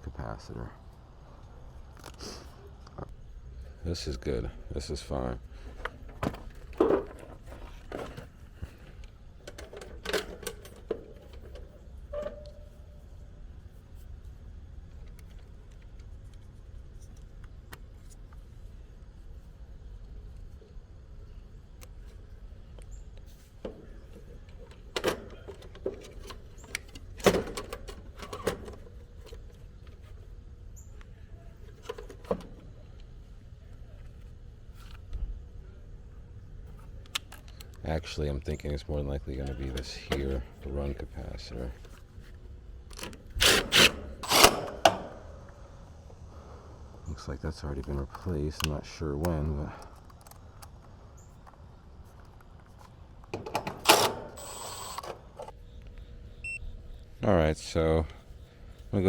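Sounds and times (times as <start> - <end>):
tools and parts clicking and knocking: 9.0 - 12.6, 23.6 - 29.6, 42.9 - 45.5, 52.2 - 55.5.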